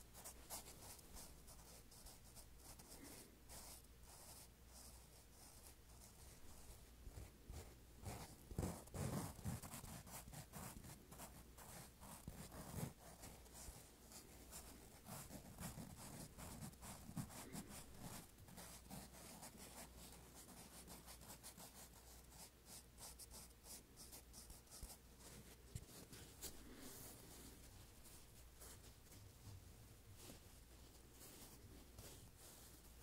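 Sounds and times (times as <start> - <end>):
soft foam squishes: 25.0 - 33.0.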